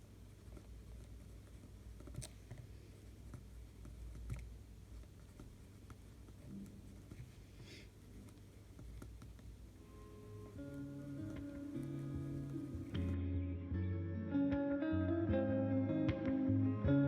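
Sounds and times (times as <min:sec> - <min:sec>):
soft clicks and taps: 0:00.0 - 0:09.7, 0:10.5 - 0:13.2
low steady hum: 0:00.0 - 0:17.0.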